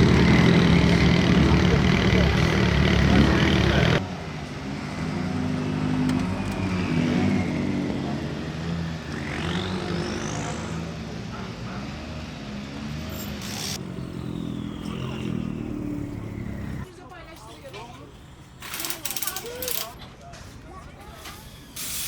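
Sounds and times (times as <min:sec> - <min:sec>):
car engine revving: 0:00.0 - 0:04.0, 0:12.2 - 0:16.9.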